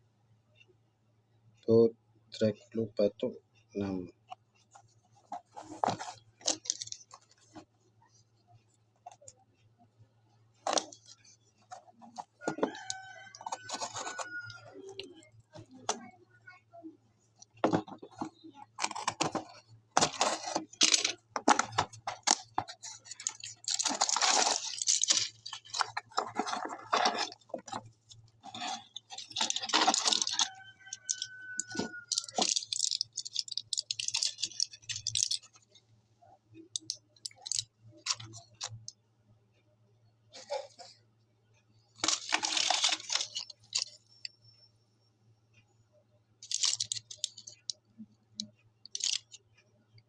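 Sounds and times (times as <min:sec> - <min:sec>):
boxes clicking and clinking: 0:05.3 - 0:07.7, 0:10.6 - 0:16.0, 0:17.6 - 0:35.6, 0:36.7 - 0:38.9, 0:42.0 - 0:44.3, 0:46.4 - 0:47.8, 0:48.4 - 0:49.4
packaging rustling and crinkling: 0:12.1 - 0:14.4, 0:17.7 - 0:27.8, 0:28.4 - 0:35.4, 0:42.0 - 0:43.9
packaging tearing: 0:23.2 - 0:27.3.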